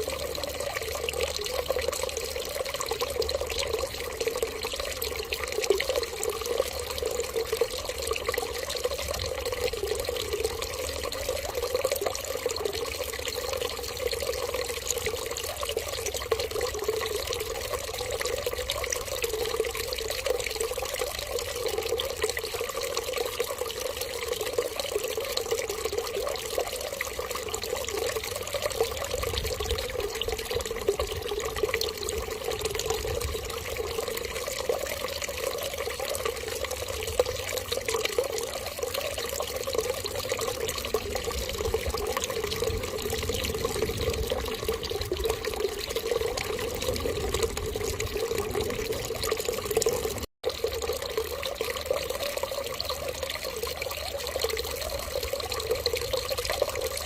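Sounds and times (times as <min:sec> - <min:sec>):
water trickling: 0:00.0 - 0:57.0.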